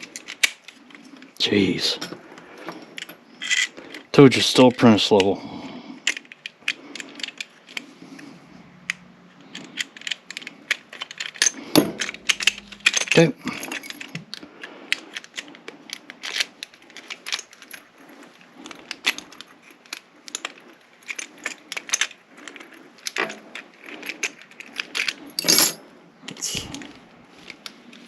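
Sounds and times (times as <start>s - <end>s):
metal parts clattering: 2.7s - 5.3s, 9.4s - 27.6s
metallic clicks of lock parts: 3.0s - 4.1s, 8.8s - 17.9s, 18.6s - 25.8s.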